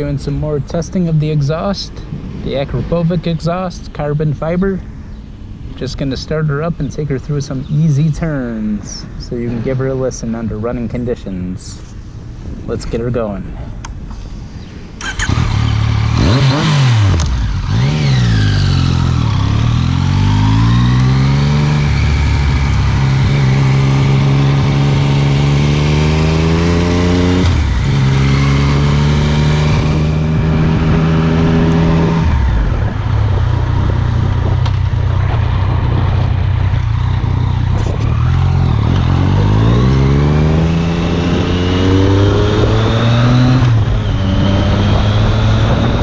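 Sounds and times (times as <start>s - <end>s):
motorcycle engine revving: 15.0s - 46.0s.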